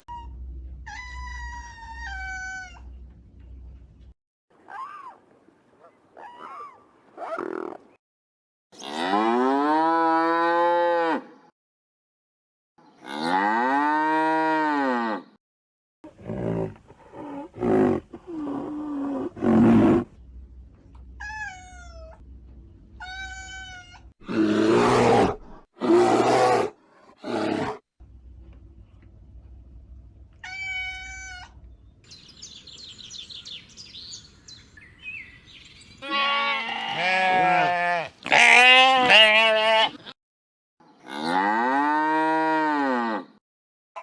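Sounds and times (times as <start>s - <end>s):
rough animal sounds: 32.1s - 36.2s.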